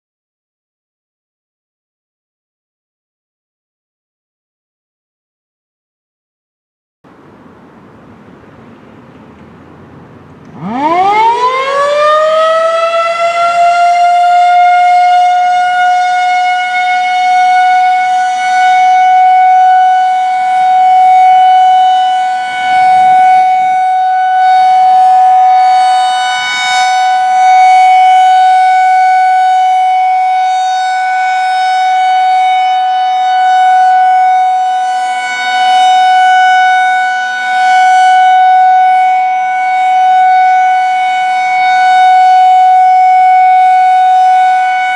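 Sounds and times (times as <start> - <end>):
tornado siren winding up: 9.1 - 44.9.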